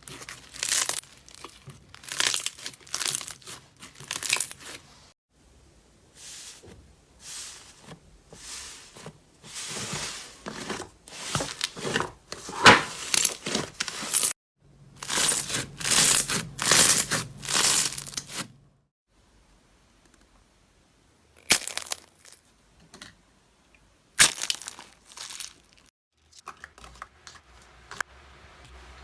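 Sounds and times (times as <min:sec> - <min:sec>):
slime crackling and tearing: 0:00.0 - 0:04.8, 0:15.0 - 0:18.4, 0:24.2 - 0:25.9.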